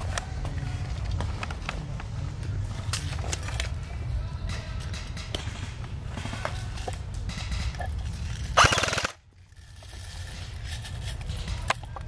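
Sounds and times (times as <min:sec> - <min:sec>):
wind and movement rumble: 0:00.0 - 0:12.0
airsoft gun full-auto burst: 0:08.6 - 0:09.2.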